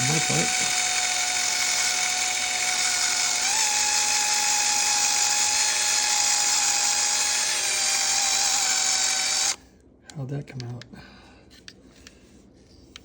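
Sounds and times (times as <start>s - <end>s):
electric drill motor whine: 0.0s - 9.6s.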